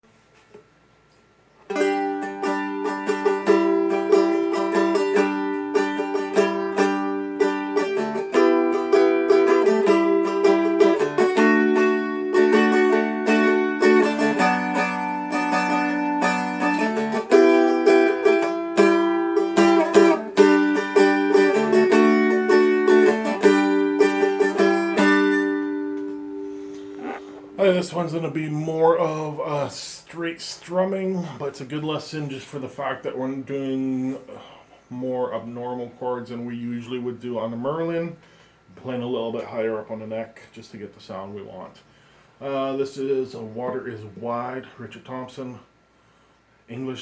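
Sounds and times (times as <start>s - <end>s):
guitar strummed: 1.7s - 28.3s.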